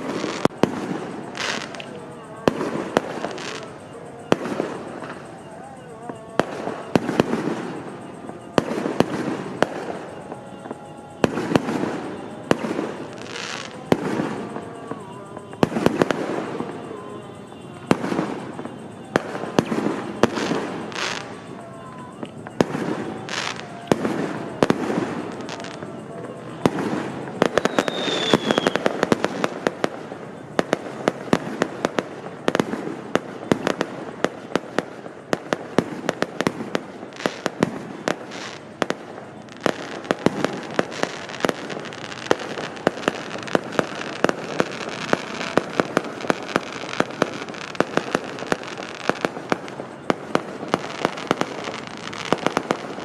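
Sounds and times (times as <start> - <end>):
falling firework whistle: 0.0 - 53.0
fireworks and firecrackers banging: 0.0 - 53.0.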